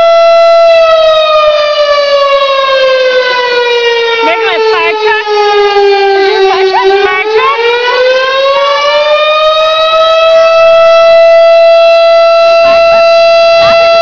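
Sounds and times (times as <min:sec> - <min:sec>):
siren wailing: 0:00.0 - 0:14.0.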